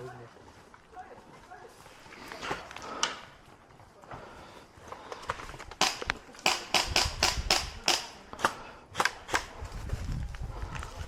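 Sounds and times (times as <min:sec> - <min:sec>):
airsoft gun shots: 0:05.8 - 0:09.5.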